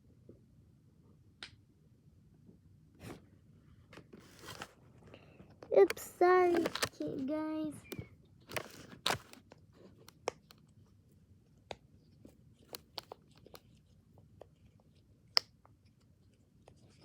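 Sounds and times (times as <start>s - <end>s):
plastic toys rustling scrapes: 4.2s - 5.1s, 5.8s - 7.4s, 8.5s - 9.9s.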